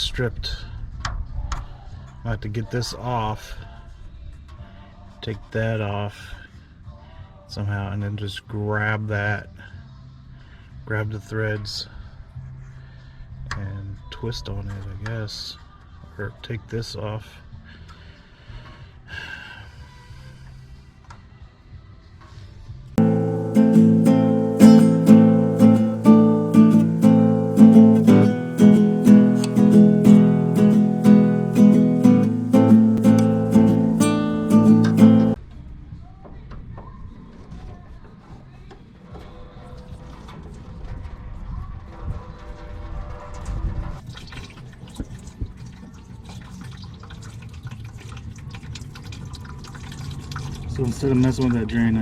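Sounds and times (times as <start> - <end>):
acoustic guitar strumming: 23.0 - 35.4
coolant splashing and dripping: 44.0 - 51.3.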